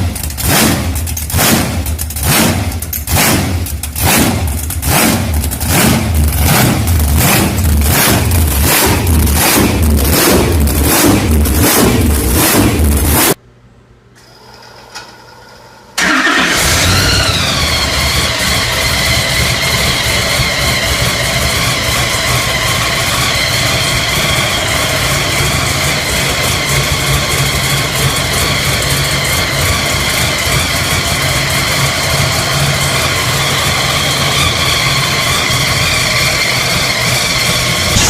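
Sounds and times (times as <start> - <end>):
engine idling: 0.0 - 13.4, 16.0 - 38.0
high whine: 16.5 - 38.0.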